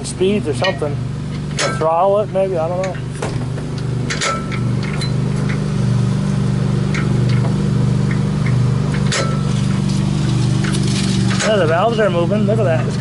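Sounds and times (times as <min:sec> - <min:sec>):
low mechanical hum: 0:00.0 - 0:13.0.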